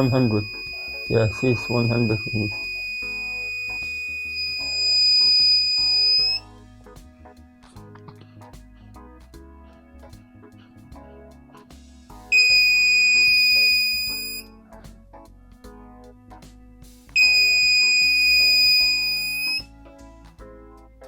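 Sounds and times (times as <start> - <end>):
smoke detector alarm beeps: 0.0 - 6.5, 12.3 - 14.5, 17.2 - 19.7.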